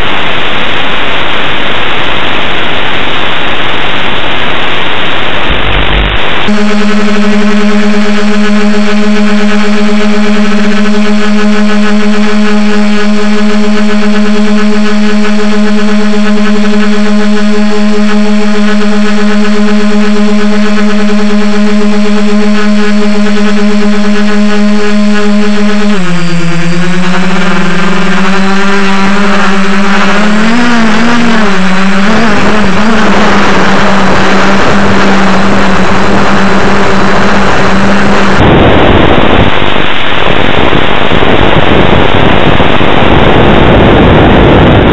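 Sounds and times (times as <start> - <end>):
quadcopter motors humming: 0.0 - 44.9
rushing hiss of wind: 38.4 - 44.9.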